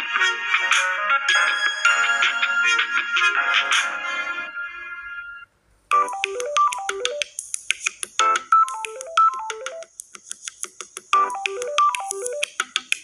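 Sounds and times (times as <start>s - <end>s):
electronic ringtone melody: 4.4s - 7.4s, 8.2s - 9.9s, 11.2s - 12.6s
clicking beat: 5.9s - 13.0s.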